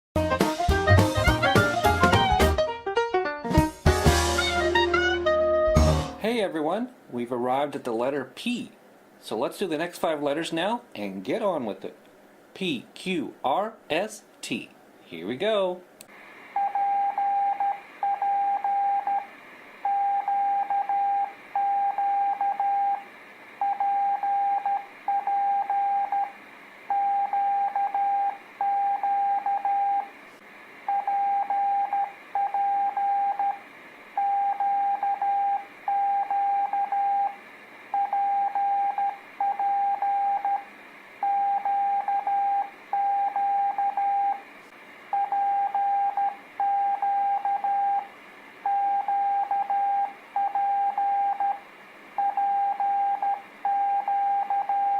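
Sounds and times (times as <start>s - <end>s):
morse code beeps: 16.6s - 19.2s, 19.9s - 23.0s, 23.6s - 26.3s, 26.9s - 30.1s, 30.9s - 33.6s, 34.2s - 37.3s, 38.0s - 40.6s, 41.2s - 44.4s, 45.2s - 48.0s, 48.7s - 51.6s, 52.2s - 54.9s.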